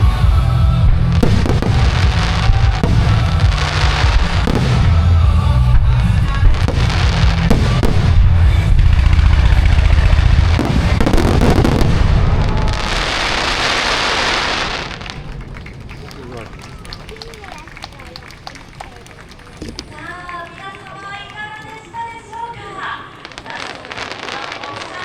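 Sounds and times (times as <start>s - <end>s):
loud music with heavy bass: 0.0s - 12.0s
loud rush of noise: 0.0s - 17.6s
fireworks bangs: 0.0s - 25.0s.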